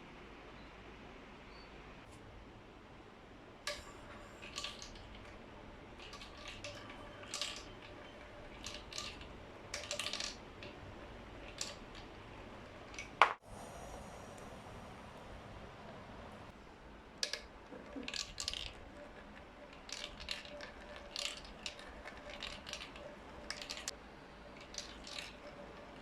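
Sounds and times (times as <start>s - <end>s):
faint ringing from pipes: 3.7s - 11.1s
marbles clacking through pipes: 3.7s - 13.4s, 17.2s - 26.0s.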